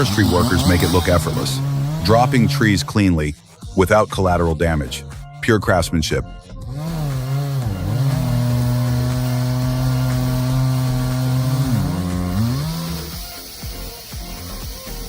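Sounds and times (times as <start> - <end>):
chainsaw engine running: 0.0 - 3.3, 6.7 - 15.0.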